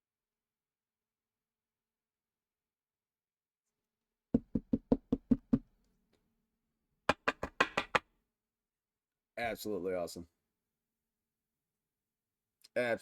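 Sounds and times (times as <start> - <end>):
sharp knocks on hard surface: 4.4 - 5.7, 7.1 - 8.0.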